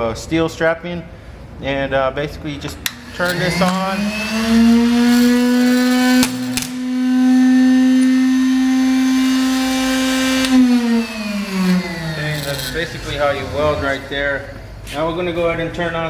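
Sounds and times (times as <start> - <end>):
loud electrical hum: 0.0 - 16.0
sharp welding cracks: 5.7 - 6.9.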